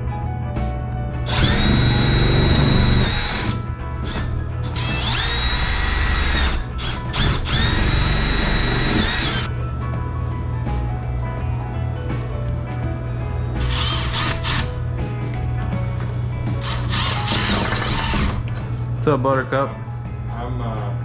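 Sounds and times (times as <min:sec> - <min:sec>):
background music: 0:00.0 - 0:21.0
power drill whining: 0:01.3 - 0:09.5, 0:13.6 - 0:14.8, 0:16.6 - 0:18.6.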